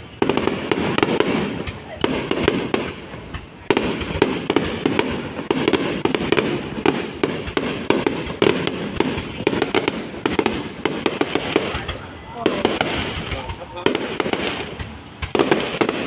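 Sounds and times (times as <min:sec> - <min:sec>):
fireworks crackling and banging: 0:00.0 - 0:16.0.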